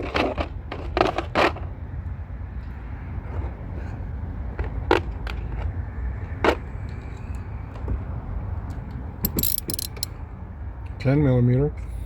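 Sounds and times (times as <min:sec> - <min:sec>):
socket wrench clicking: 0:09.2 - 0:10.1.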